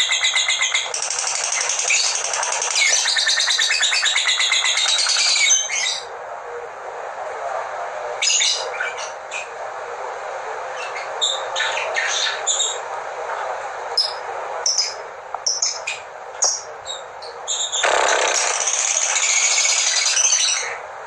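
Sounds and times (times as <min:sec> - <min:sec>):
bird chattering song: 0:00.0 - 0:06.1, 0:14.0 - 0:20.8
steady hiss: 0:06.0 - 0:21.0.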